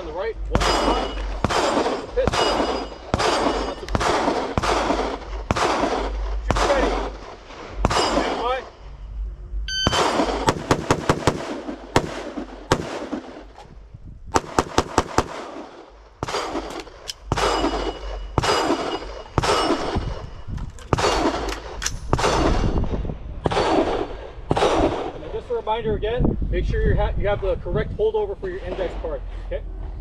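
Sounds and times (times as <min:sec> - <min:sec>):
pistol shots: 0:00.6 - 0:08.6, 0:09.7 - 0:13.7, 0:14.4 - 0:20.3, 0:20.9 - 0:22.8, 0:23.4 - 0:25.2
echoing gunshots: 0:00.6 - 0:08.8, 0:09.7 - 0:25.2
rifle shots: 0:00.6 - 0:08.8, 0:09.7 - 0:22.8, 0:23.4 - 0:25.2.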